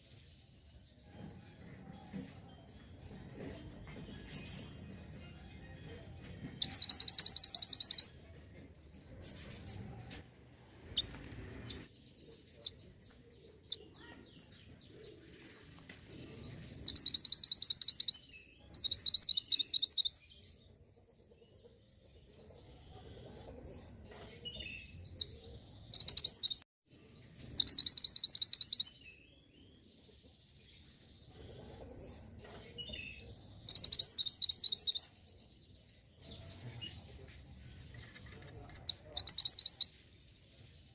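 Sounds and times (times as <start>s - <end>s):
bird trills: 6.6s - 8.2s, 16.9s - 20.2s, 27.6s - 29.0s, 33.7s - 35.1s, 38.9s - 39.9s
faint bird chirps: 6.6s - 8.3s, 16.3s - 20.5s, 22.3s - 35.6s, 36.2s - 40.9s.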